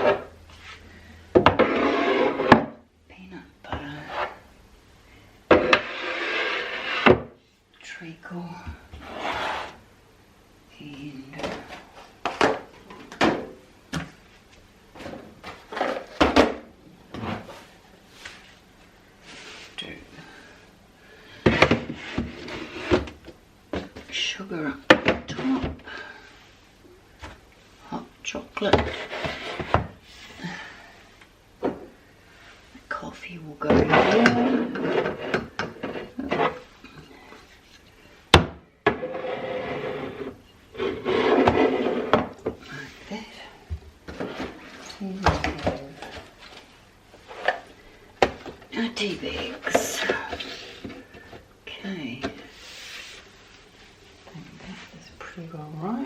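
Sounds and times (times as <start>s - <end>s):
jars scraping along shelves: 0.0s - 2.8s, 3.8s - 4.5s, 5.5s - 7.4s, 9.0s - 9.8s, 21.3s - 23.2s, 25.0s - 26.3s, 28.6s - 30.6s, 33.6s - 38.2s, 38.8s - 43.5s, 44.1s - 46.6s, 48.8s - 51.4s.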